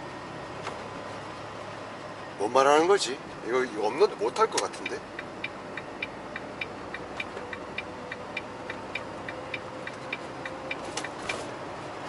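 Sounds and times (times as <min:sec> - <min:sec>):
truck engine hum: 0:00.0 - 0:12.0
turn signal clicking: 0:04.4 - 0:11.4.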